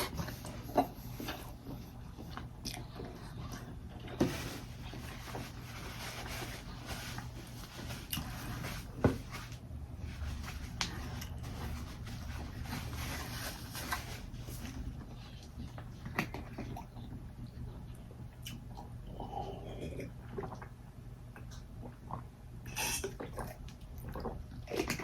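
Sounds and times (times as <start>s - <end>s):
chewing and mouth sounds: 0.0s - 4.0s, 21.4s - 25.0s
low steady hum: 0.0s - 25.0s.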